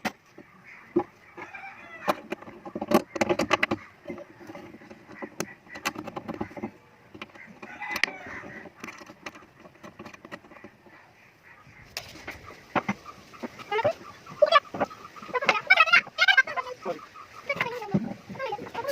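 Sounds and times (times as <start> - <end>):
knocks and clicks of tools: 0.0 - 10.9
bird calling: 0.0 - 18.9.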